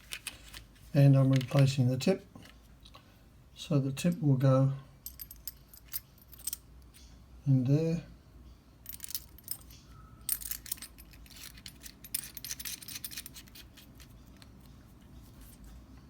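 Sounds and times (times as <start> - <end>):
small metal parts clicking: 8.8 - 14.8.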